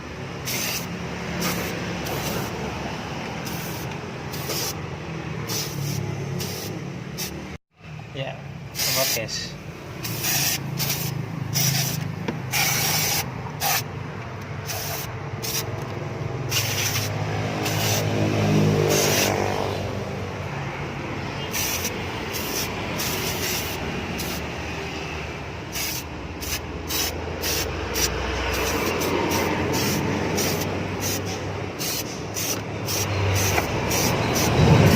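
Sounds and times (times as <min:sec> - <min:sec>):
aerosol spray hissing bursts: 0:00.4 - 0:02.6, 0:03.4 - 0:04.8, 0:05.4 - 0:07.4, 0:08.8 - 0:09.4, 0:10.0 - 0:13.9, 0:14.6 - 0:15.7, 0:16.5 - 0:18.1, 0:18.9 - 0:19.3, 0:21.5 - 0:24.5, 0:25.7 - 0:34.9.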